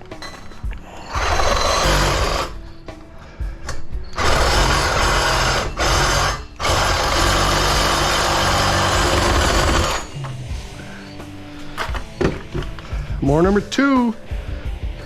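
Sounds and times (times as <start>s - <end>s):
power saw cutting metal pipe: 1.1s - 2.6s, 4.2s - 10.3s.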